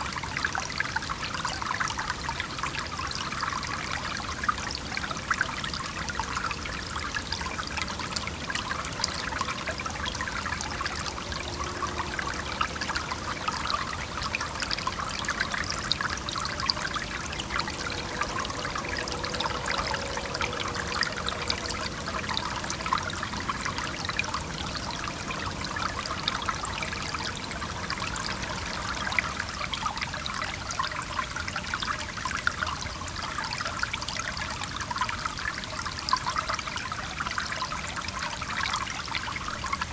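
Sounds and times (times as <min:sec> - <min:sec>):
stream splashing: 0:00.0 - 0:39.9
distant traffic rumble: 0:03.2 - 0:32.1.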